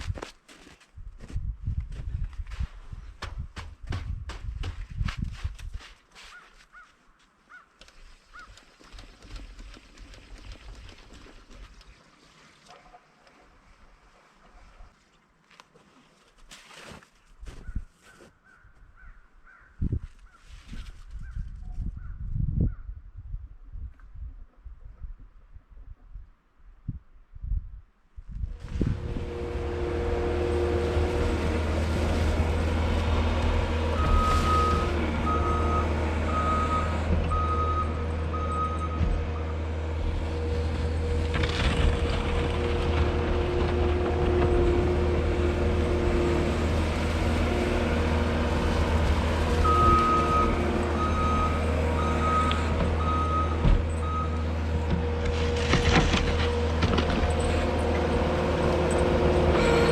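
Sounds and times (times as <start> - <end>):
diesel engine running: 28.5 - 59.9
backup alarm beeping: 33.9 - 39.5, 49.6 - 54.5.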